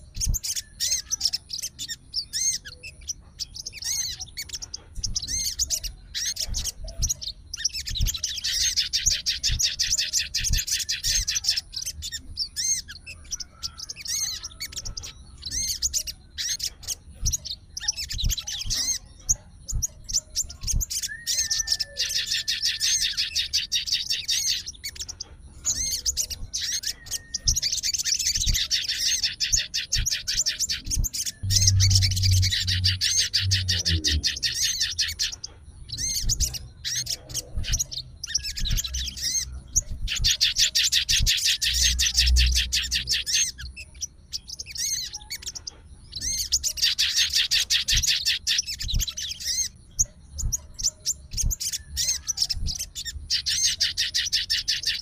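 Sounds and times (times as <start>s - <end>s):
songbird trilling: 0.0s - 55.0s
thin drawn-out bird whistle: 19.7s - 25.0s.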